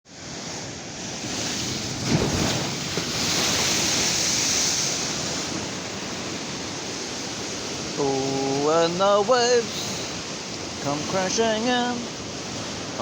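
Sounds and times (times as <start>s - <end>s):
churning water and spray: 0.1s - 13.0s
wave crashing against wall: 1.2s - 6.4s.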